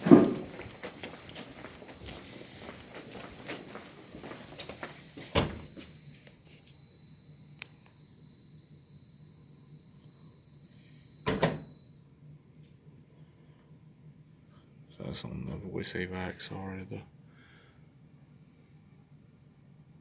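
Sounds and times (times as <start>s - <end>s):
high-pitched alarm buzzer tone: 0.0s - 12.0s.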